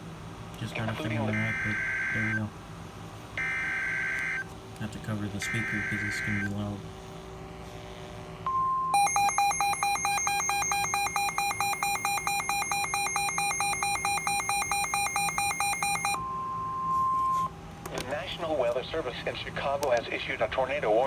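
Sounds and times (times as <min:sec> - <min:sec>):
steady warning alarm tone: 0:00.8 - 0:02.5, 0:03.4 - 0:04.5, 0:05.3 - 0:06.6, 0:08.5 - 0:17.5
rapidly pulsing alarm beep: 0:01.0 - 0:02.4, 0:03.4 - 0:04.4, 0:05.4 - 0:06.5, 0:08.5 - 0:17.5.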